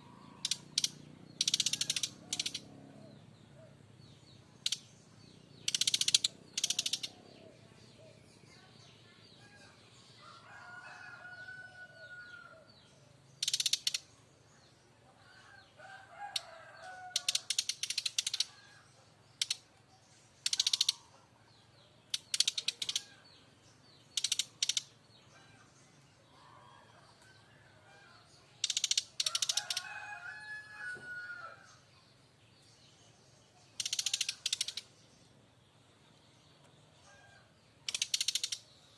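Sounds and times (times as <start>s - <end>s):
bird harsh rattling call: 0.4s - 2.7s, 5.6s - 7.2s, 13.4s - 14.1s, 16.3s - 19.6s, 20.4s - 21.1s, 22.1s - 23.2s, 24.1s - 24.9s, 28.6s - 30.9s, 33.8s - 34.8s, 37.9s - 38.6s.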